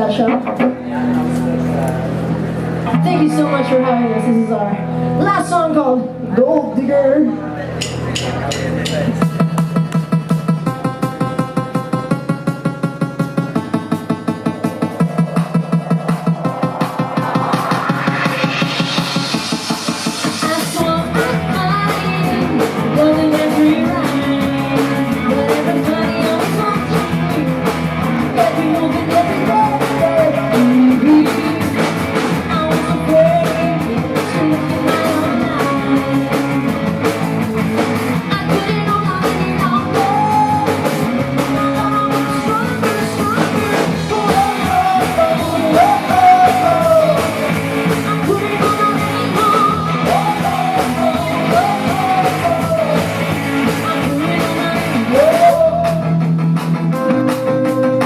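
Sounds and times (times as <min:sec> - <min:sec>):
drum kit: 0:00.0 - 0:04.3, 0:07.8 - 0:58.0
electric guitar: 0:00.0 - 0:58.0
person singing: 0:16.1 - 0:36.9, 0:38.2 - 0:56.3.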